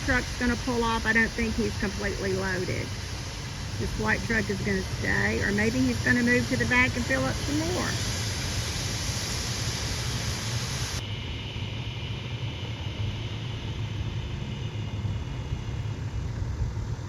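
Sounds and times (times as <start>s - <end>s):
high hiss: 0.0s - 12.2s.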